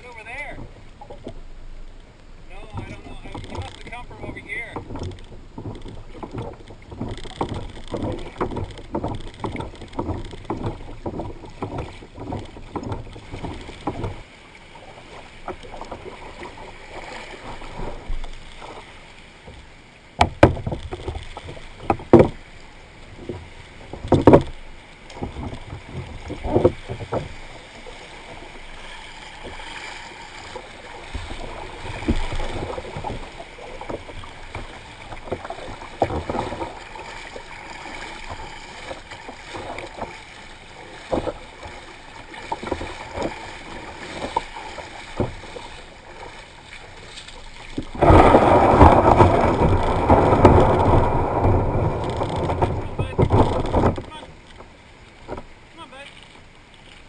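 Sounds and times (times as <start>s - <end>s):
paddle splashing water: 0.0s - 57.0s
loud knocks: 20.2s - 21.2s, 47.8s - 54.1s.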